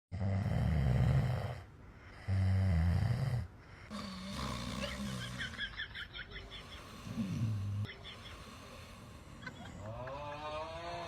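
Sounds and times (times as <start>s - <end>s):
dog snoring: 0.2s - 5.4s.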